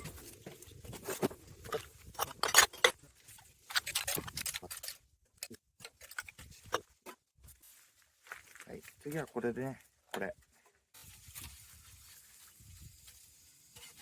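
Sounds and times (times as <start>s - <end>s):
bottles and litter rustling: 0.0s - 14.0s.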